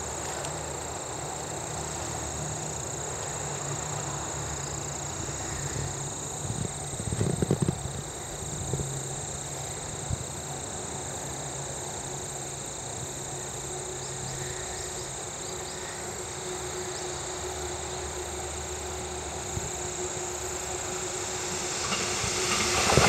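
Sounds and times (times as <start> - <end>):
train approaching: 0.0 - 23.0
low hum: 19.3 - 23.0.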